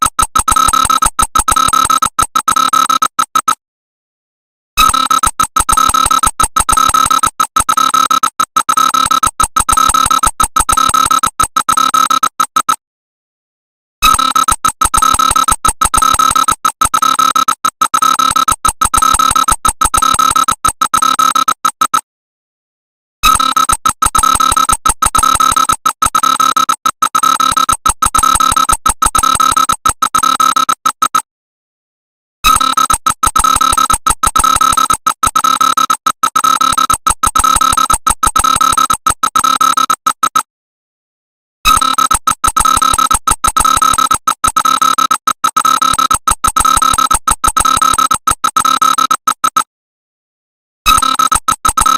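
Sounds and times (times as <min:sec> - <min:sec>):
stuttering electronic alarm tone: 0:00.0 - 0:03.6, 0:04.8 - 0:12.8, 0:14.0 - 0:22.0, 0:23.2 - 0:31.2, 0:32.4 - 0:40.5, 0:41.7 - 0:49.7, 0:50.9 - 0:51.9.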